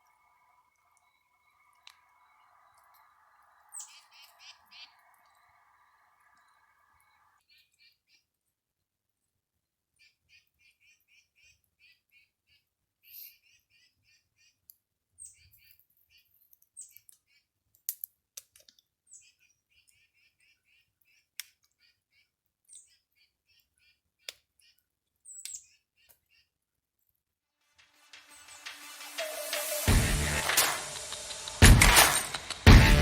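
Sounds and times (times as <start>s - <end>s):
bird chirping: 0.0s - 8.4s, 10.0s - 17.5s, 19.0s - 26.5s
sharp clicks: 28.6s - 33.0s.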